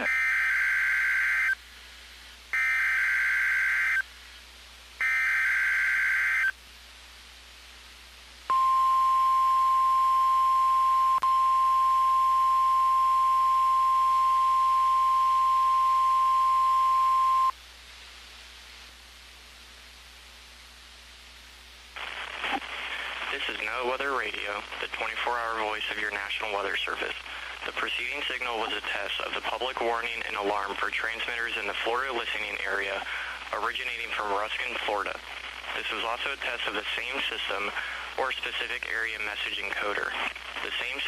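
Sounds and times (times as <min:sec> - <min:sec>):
steady warning alarm tone: 0:00.0 - 0:01.6, 0:02.6 - 0:04.0, 0:05.0 - 0:06.5, 0:08.5 - 0:17.5.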